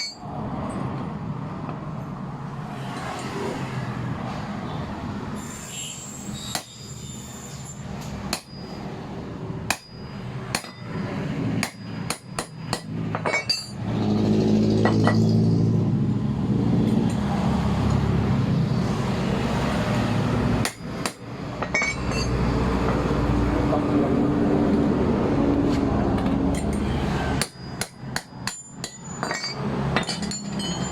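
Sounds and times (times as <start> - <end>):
hammer striking metal: 0.0 - 0.2, 6.5 - 6.9, 7.6 - 9.0, 9.6 - 13.8, 20.6 - 23.1, 26.5 - 30.9.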